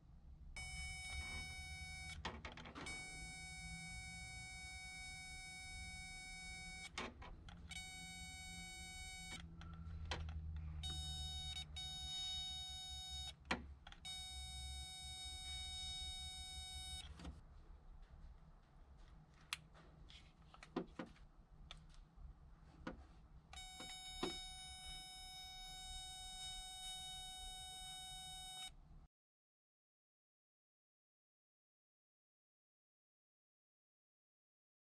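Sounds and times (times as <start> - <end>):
electronic buzz tone: 0.6 - 2.2, 2.8 - 7.0, 7.6 - 9.4, 10.8 - 13.4, 14.1 - 17.1, 23.6 - 28.7.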